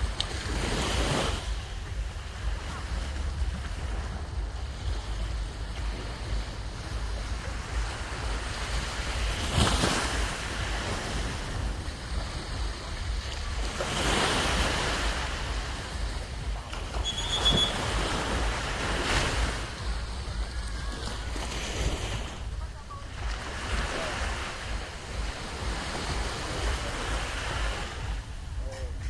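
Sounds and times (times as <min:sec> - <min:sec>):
sea waves breaking: 0:00.0 - 0:29.0
wind rumbling on microphone: 0:00.0 - 0:29.0
brief high-pitched tone: 0:17.0 - 0:17.8.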